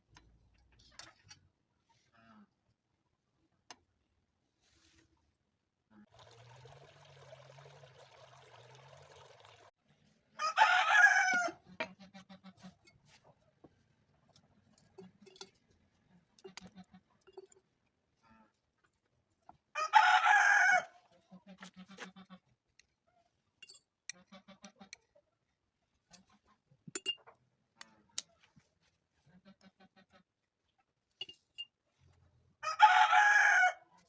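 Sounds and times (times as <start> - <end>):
rooster crowing: 10.4 - 11.6, 19.8 - 20.9, 32.6 - 33.8.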